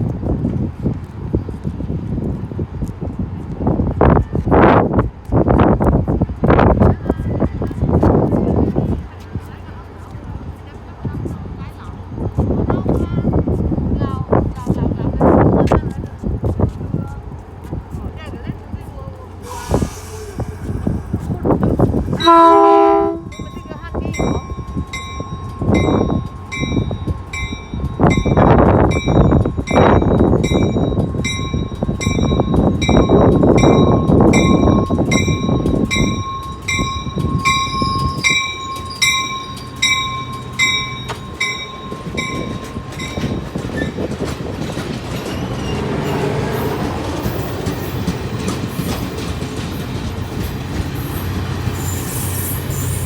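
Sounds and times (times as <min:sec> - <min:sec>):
train rumbling past: 0:00.0 - 0:53.0
bell ringing steadily: 0:22.2 - 0:44.1.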